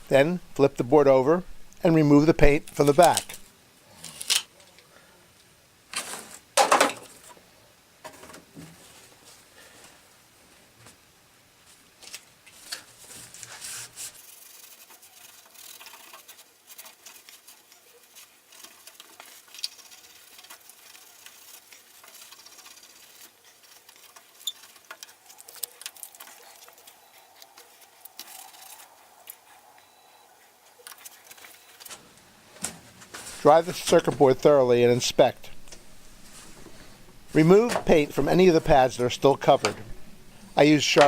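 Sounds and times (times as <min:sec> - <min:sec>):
paper towel scrubbing board: 0:13.0 - 0:26.5.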